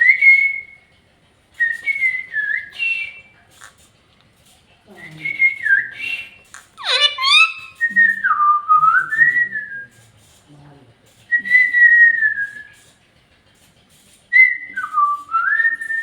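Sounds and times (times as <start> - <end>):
parrot whistling: 5.3 - 9.8.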